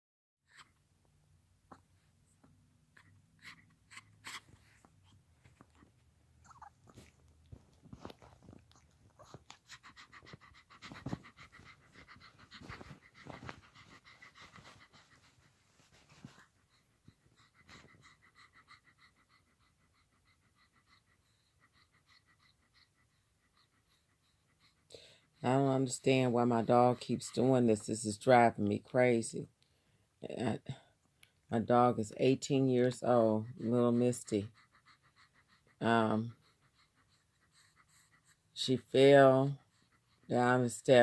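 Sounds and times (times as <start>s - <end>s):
dog panting hard: 6.9s - 27.4s, 33.6s - 38.6s, 39.5s - 40.5s.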